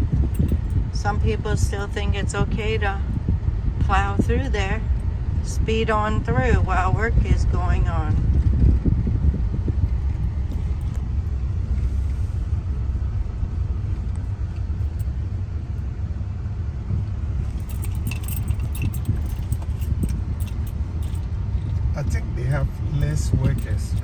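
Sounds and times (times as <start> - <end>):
car road and engine noise: 0.0 - 24.0
light clicking and rattling: 0.2 - 0.8, 17.4 - 22.2, 23.0 - 24.0.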